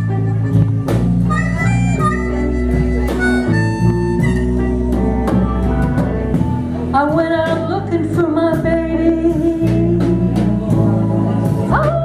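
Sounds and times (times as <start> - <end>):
harmonica long notes: 0.0 - 5.2
blues band playing: 0.0 - 12.0.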